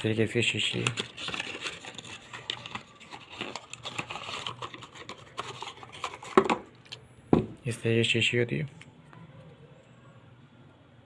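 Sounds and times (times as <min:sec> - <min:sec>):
packaging rustling: 0:00.4 - 0:06.8.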